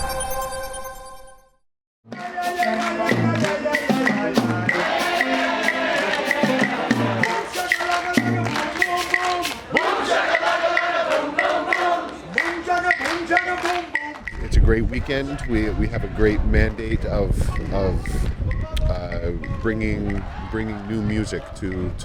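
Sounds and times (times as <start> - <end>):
live band playing: 2.1 - 14.4.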